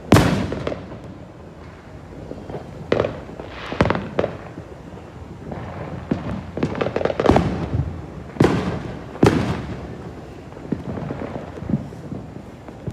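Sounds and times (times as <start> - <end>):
fireworks bangs and crackles: 0.0 - 12.9
loud firework blasts: 0.0 - 12.9.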